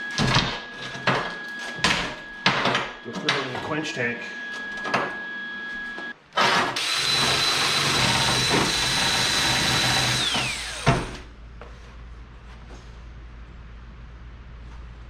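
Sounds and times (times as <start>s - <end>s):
power grinder whining: 5.8s - 11.2s.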